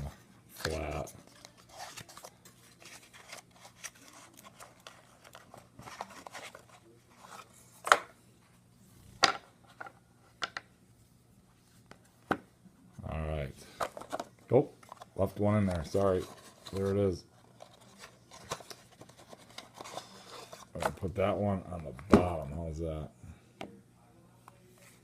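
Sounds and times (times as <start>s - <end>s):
cardboard rustling and scraping: 0.0s - 7.9s, 13.8s - 21.0s.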